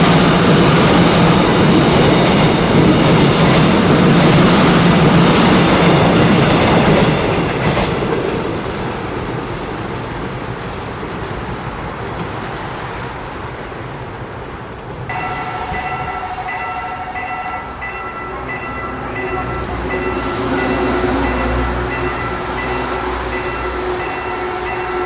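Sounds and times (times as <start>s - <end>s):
train rumble: 0.0s - 25.0s
level crossing bell dinging: 15.1s - 25.0s.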